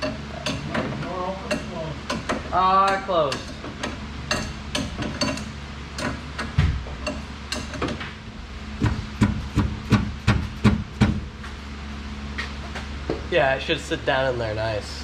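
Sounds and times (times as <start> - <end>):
hammer tapping on metal: 0.0 - 8.0
steady low hum: 0.0 - 15.0.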